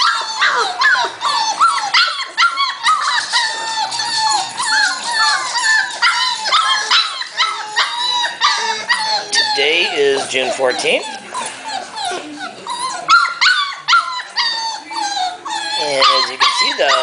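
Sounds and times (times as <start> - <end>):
puppies whining and yelping: 0.0 - 17.0.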